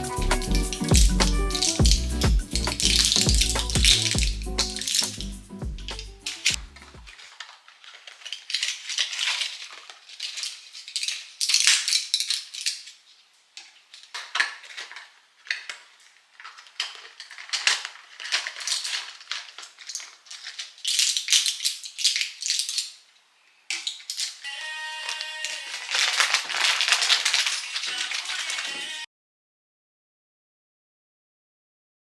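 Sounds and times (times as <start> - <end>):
light clinking: 0.0 - 23.0
scraping and rustling: 0.0 - 29.0.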